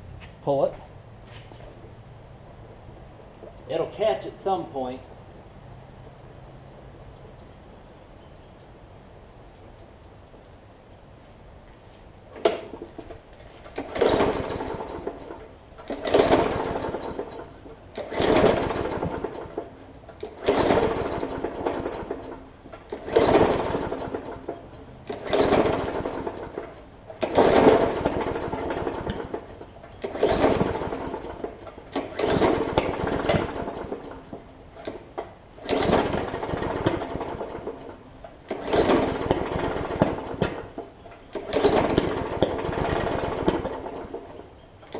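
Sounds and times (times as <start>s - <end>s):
mower engine pull-start: 12.3s - 44.9s
engine firing and sputtering: 12.4s - 44.9s.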